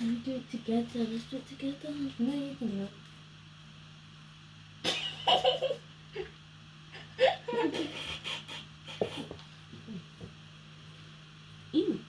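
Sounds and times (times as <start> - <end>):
girls laughing and giggling: 7.0 - 8.3.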